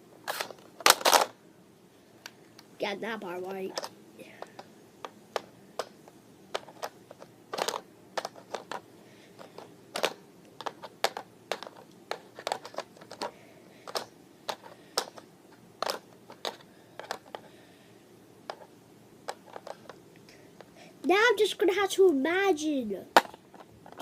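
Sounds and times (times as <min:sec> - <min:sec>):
plastic toy clicks and knocks: 0:00.4 - 0:01.3, 0:06.5 - 0:08.8, 0:09.4 - 0:15.2, 0:15.8 - 0:17.4.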